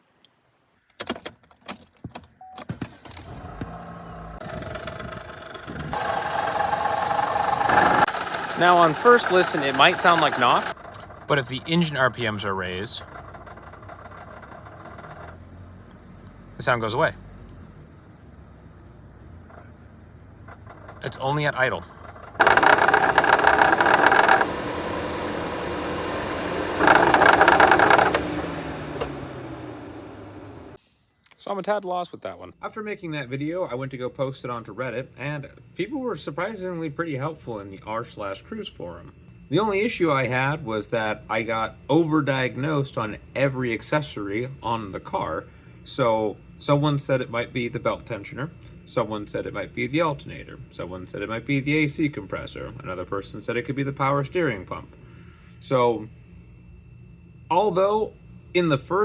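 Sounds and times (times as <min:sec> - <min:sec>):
car engine idling with knock: 0:04.4 - 0:11.3, 0:19.4 - 0:21.0, 0:21.9 - 0:30.8.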